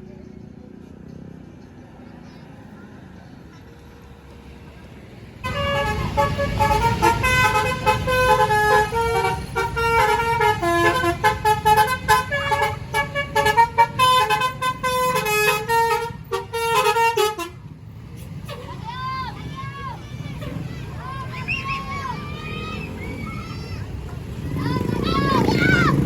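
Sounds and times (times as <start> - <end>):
bus horn playing fast melody: 5.4 - 17.7.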